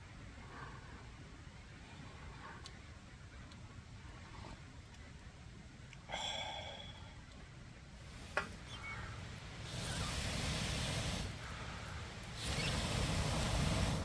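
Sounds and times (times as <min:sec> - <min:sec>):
loud hissing: 0:08.0 - 0:14.0.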